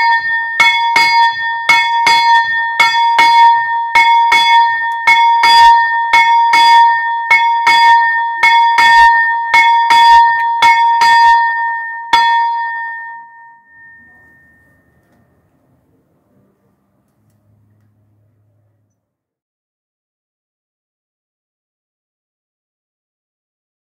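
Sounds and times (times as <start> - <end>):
small bronze bell ringing: 0.0 - 15.4.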